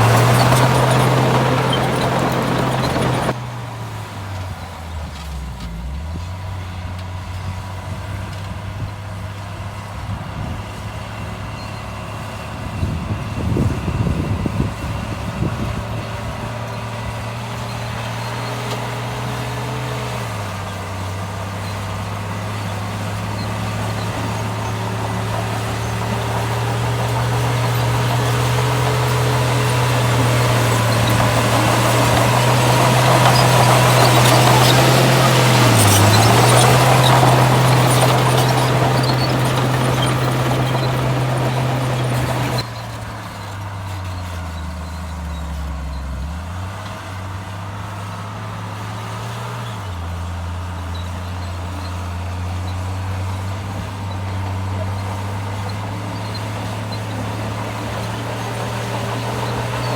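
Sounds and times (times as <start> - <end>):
rough clatter: 0.0 - 3.4, 21.6 - 43.1, 53.3 - 59.9
heavy diesel engine running: 0.0 - 5.1, 9.9 - 45.2, 50.0 - 59.9.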